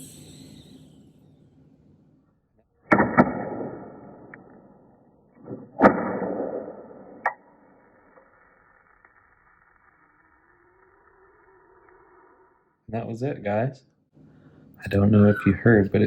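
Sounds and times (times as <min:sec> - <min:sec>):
faint high whistle: 0:00.0 - 0:01.6, 0:14.9 - 0:16.0.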